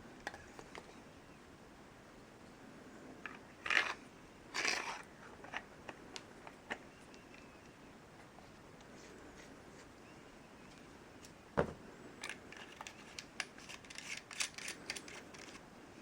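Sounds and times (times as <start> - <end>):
small hard parts clicking: 12.2 - 15.6.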